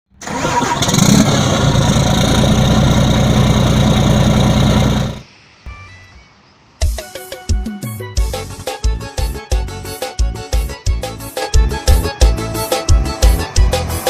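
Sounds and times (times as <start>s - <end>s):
truck diesel engine running: 0.1s - 5.3s
faint background noise: 5.2s - 8.1s.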